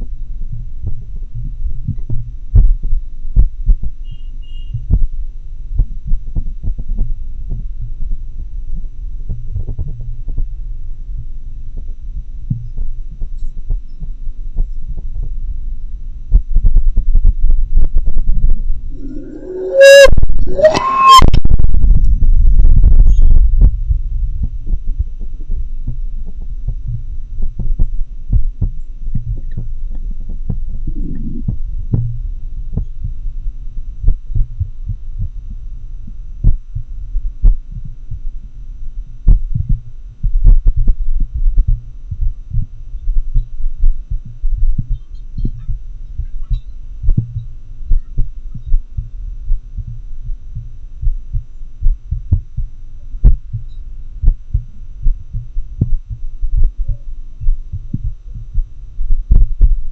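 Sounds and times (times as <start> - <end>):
irregular heartbeat thuds: 0.0 - 59.9
steady low hum: 0.0 - 59.9
loud low rumble: 14.5 - 59.9.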